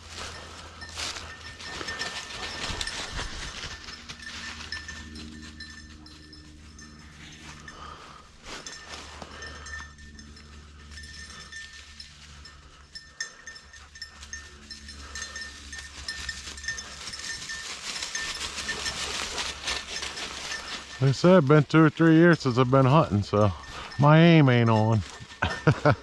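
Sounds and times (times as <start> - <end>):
footsteps through brush: 0.0 - 6.3, 7.0 - 9.9, 15.7 - 25.8
faint bell-like ringing: 0.0 - 26.0.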